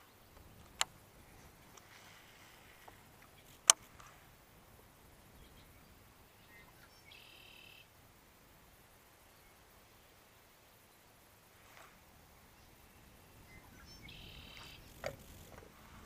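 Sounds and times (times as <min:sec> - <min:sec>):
sharp click: 0:03.6 - 0:03.9
short buzzy bird call: 0:06.6 - 0:07.8, 0:13.8 - 0:14.9.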